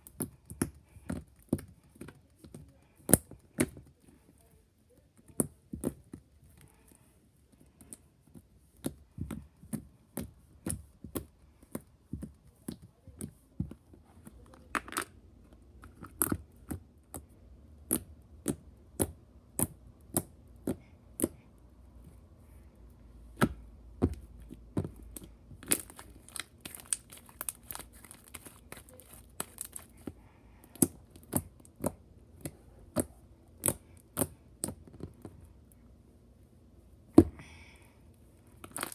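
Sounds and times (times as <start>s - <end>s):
slime squished with sticky pops: 23.4s - 34.9s, 38.6s - 38.9s.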